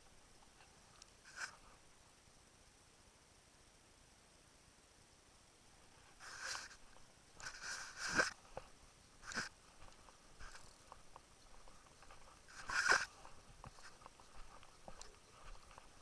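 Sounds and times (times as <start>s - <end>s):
rustling footstep scuffs: 6.1s - 16.0s.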